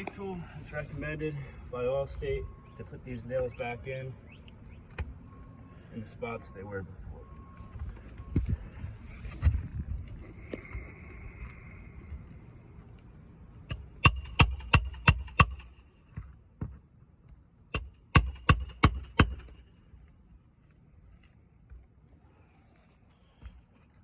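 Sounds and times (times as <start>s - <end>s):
hammer striking nails: 13.7s - 15.8s, 17.7s - 19.6s.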